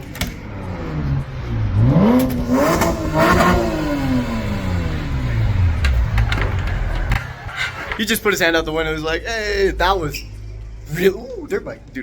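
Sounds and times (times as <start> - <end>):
car engine revving: 0.4 - 8.0.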